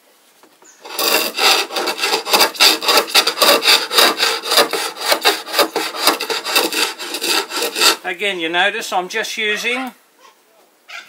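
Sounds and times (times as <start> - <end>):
sandpaper scratching on wood: 0.8 - 8.0.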